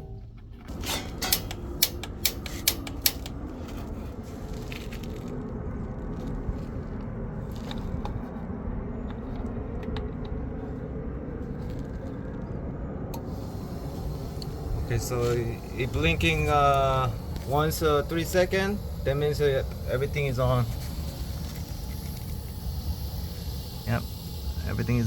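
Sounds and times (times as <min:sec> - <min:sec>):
piezo igniter clicking: 0:00.0 - 0:03.5, 0:13.1 - 0:25.0
low gas burner rushing: 0:00.0 - 0:25.0.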